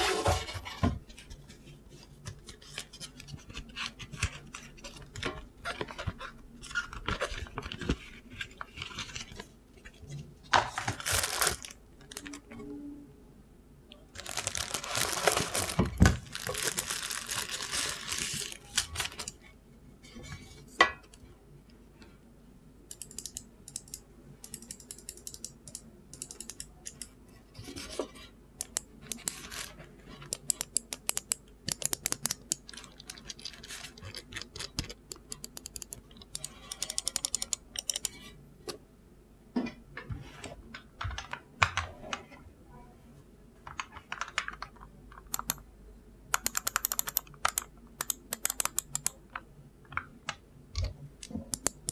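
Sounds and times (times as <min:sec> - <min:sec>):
packaging rustling and crinkling: 0:10.5 - 0:12.4, 0:14.1 - 0:19.3, 0:29.3 - 0:29.8.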